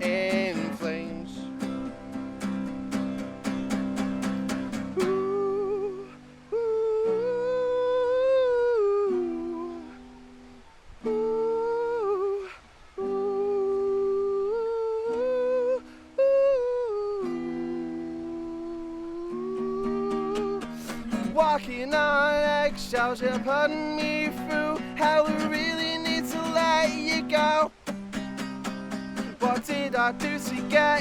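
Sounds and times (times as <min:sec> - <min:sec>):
acoustic guitar chords: 0:00.0 - 0:31.0
person humming melody: 0:04.8 - 0:10.2, 0:11.0 - 0:27.8.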